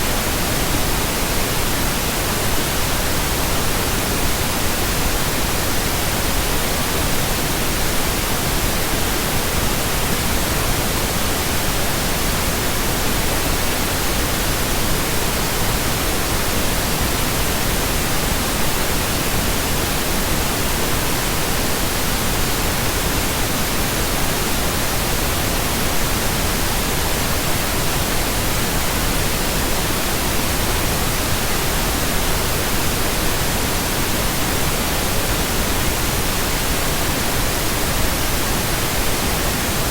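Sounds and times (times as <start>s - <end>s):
pink noise hiss: 0.0s - 39.9s.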